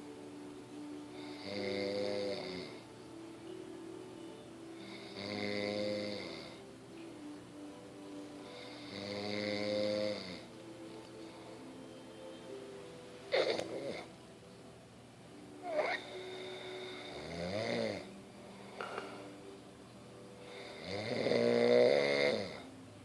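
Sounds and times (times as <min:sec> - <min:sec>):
man snoring: 0:01.2 - 0:02.8, 0:04.8 - 0:06.6, 0:08.4 - 0:10.5, 0:13.3 - 0:14.1, 0:15.6 - 0:18.1, 0:20.5 - 0:22.7.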